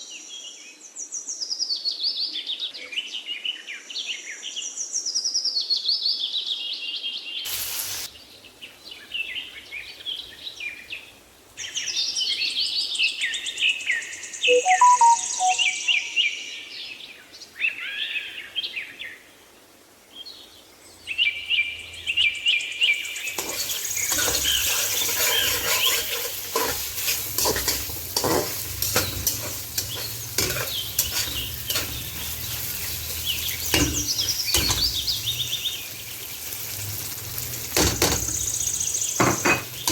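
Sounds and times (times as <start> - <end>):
food frying in hot oil: 7.5 - 12.8, 22.8 - 39.9
birds chirping: 14.5 - 16.4, 21.8 - 36.8
stirring clicks and scrapes in pan: 23.3 - 35.8.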